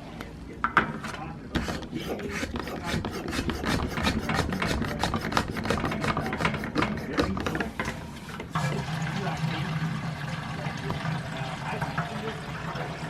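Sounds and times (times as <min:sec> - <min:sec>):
rapid scraping and rubbing strokes: 0:01.6 - 0:07.8.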